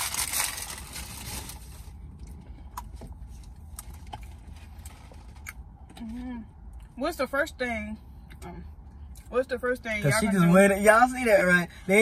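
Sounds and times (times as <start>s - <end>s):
food packaging rustling: 0.0s - 2.0s
low hum inside car: 0.0s - 12.0s.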